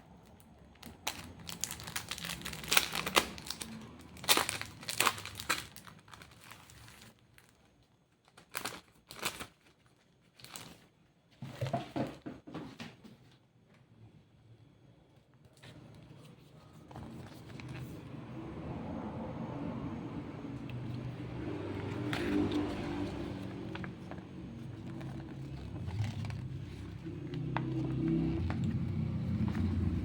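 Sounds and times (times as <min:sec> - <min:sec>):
packaging crinkling and tearing: 0:00.2 - 0:10.9, 0:21.8 - 0:30.0.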